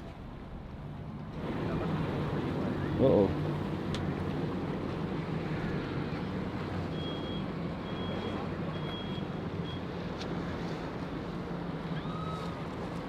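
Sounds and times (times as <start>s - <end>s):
reversing alarm beeps: 6.9s - 9.8s.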